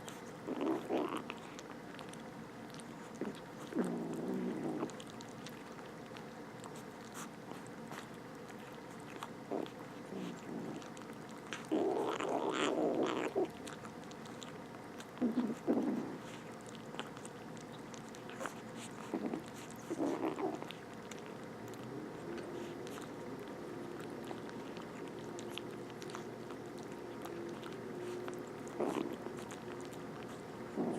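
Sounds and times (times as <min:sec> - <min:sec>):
kittens growling: 0:00.0 - 0:06.2, 0:06.8 - 0:30.9
kittens chewing food: 0:00.0 - 0:30.9.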